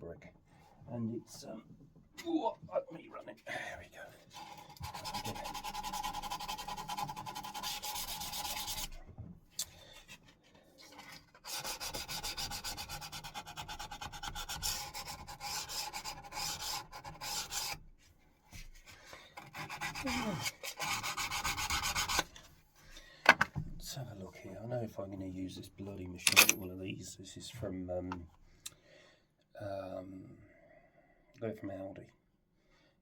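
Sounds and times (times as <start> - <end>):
sandpaper rubbing on steel: 4.8 - 9.0, 11.4 - 17.8, 19.5 - 22.3.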